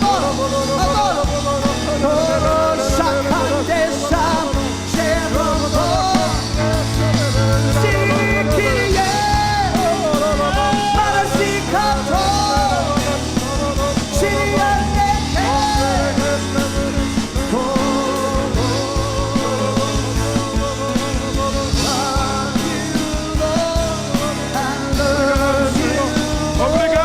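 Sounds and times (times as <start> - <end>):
drums: 0.0 - 27.0
low bass notes: 0.0 - 27.0
singing: 0.0 - 27.0
worship band playing: 0.0 - 27.0.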